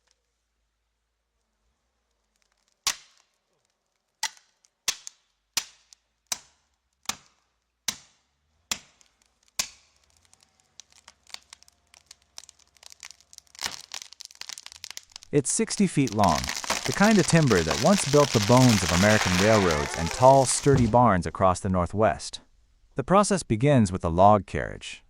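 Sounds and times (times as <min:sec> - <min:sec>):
small clicks and crackles: 0:00.0 - 0:00.4, 0:01.3 - 0:07.8, 0:08.8 - 0:20.9.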